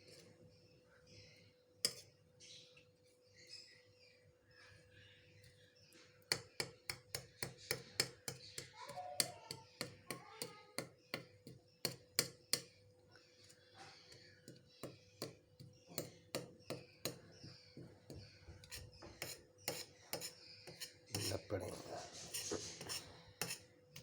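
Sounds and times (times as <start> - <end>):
utensil tapping and scraping in bowl: 1.8 - 2.2, 6.3 - 12.8, 13.4 - 24.0.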